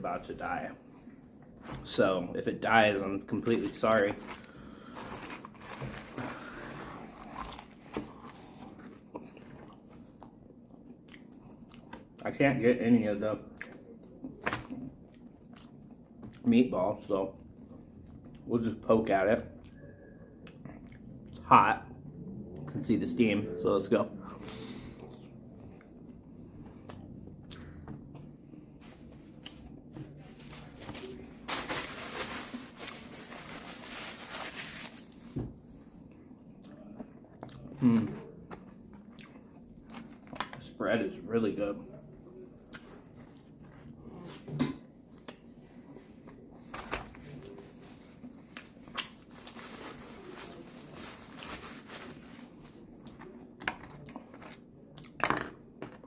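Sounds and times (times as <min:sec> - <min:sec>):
person chewing food: 0:07.0 - 0:12.2, 0:13.6 - 0:16.4, 0:24.9 - 0:28.4, 0:36.0 - 0:40.4.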